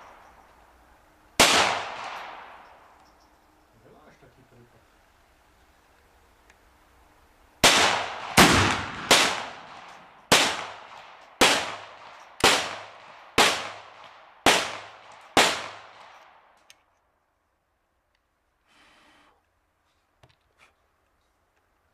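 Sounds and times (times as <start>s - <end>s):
rifle shots: 1.4s - 2.9s, 7.6s - 16.5s.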